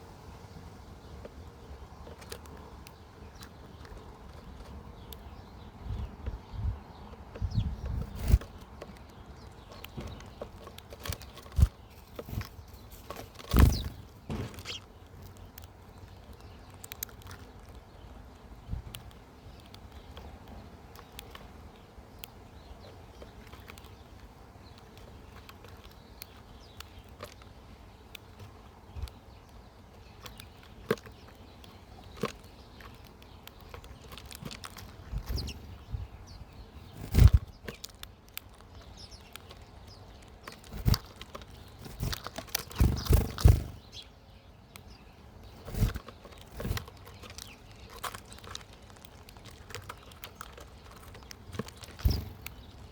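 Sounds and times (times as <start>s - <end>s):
birds chirping: 0.0s - 52.9s
low thumps and wing flutters: 7.5s - 8.6s, 13.4s - 14.8s, 36.8s - 37.6s, 40.7s - 41.1s, 41.8s - 44.0s, 45.6s - 46.9s, 52.0s - 52.6s.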